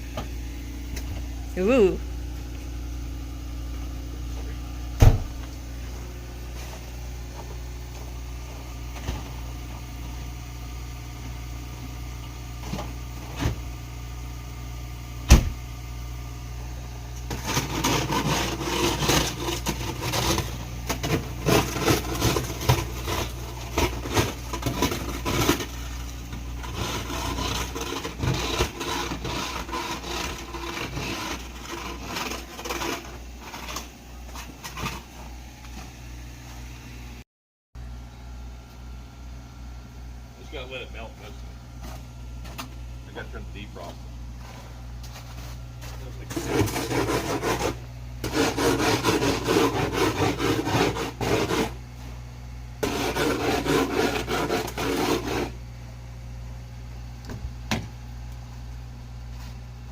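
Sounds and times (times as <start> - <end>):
car engine idling: 0.0 - 17.3
rapid scraping and clicking: 17.2 - 35.1, 46.1 - 51.8.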